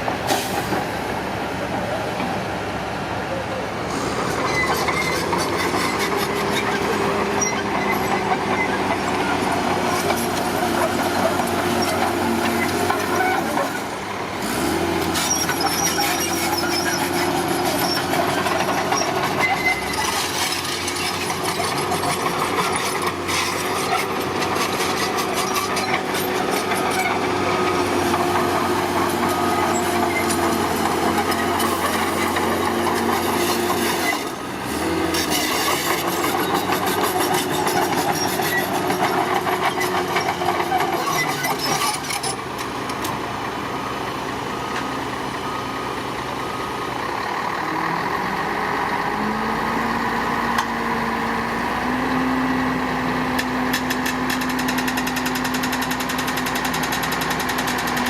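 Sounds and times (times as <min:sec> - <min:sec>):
bulldozer diesel engine: 0:00.0 - 0:58.0
crawler tracks clattering: 0:15.0 - 0:43.2.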